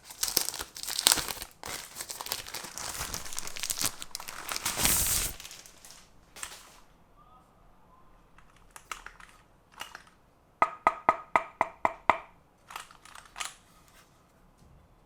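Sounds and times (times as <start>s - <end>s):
mechanical keyboard clicks: 8.4s - 10.2s, 12.7s - 13.6s.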